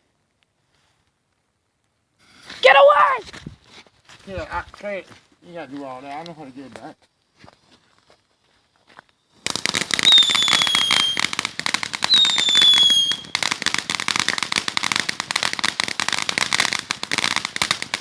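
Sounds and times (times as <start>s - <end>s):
firework crackling pops: 9.4s - 18.0s
high falling whistles: 10.0s - 11.3s, 12.1s - 13.4s.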